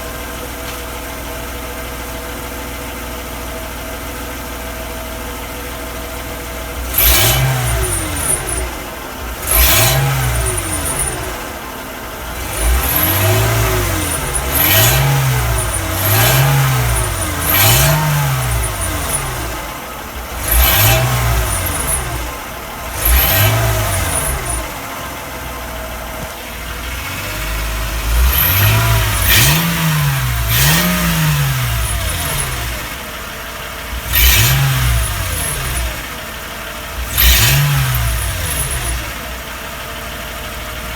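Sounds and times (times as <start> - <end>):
car engine idling and revving: 0.0 - 40.9
sharp rattly noise: 7.0 - 11.6, 12.2 - 24.9, 37.0 - 39.4.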